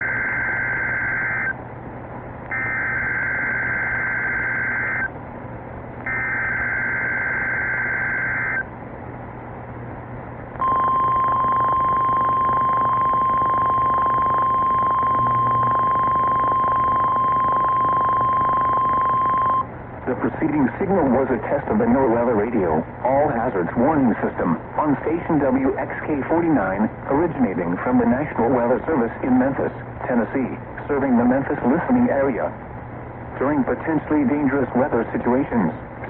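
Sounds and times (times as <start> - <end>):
steady warning alarm tone: 0.0 - 1.6, 2.5 - 5.2, 6.0 - 8.7, 10.6 - 19.7
digital header tone bursts: 2.5 - 5.1, 6.1 - 8.6
radio hiss: 11.3 - 32.6, 33.2 - 35.8.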